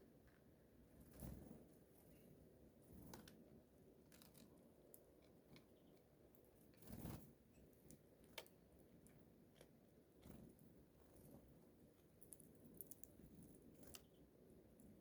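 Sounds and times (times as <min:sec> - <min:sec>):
birds pecking and cracking seed: 0:02.9 - 0:15.0.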